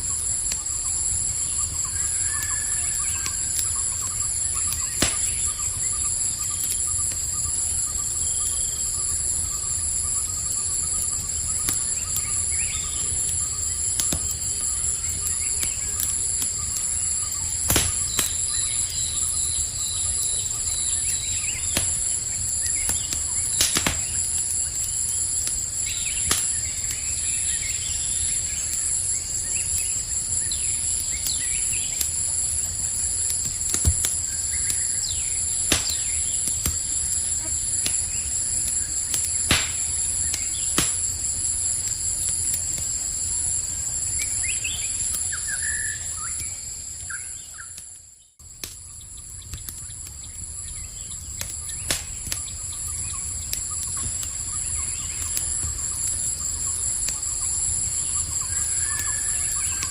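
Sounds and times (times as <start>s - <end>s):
campfire burning: 0.0s - 59.9s
fire crackling pops: 0.0s - 59.9s
night insects chorus: 0.0s - 59.9s
faint bird chirps: 0.5s - 25.2s, 43.3s - 59.9s.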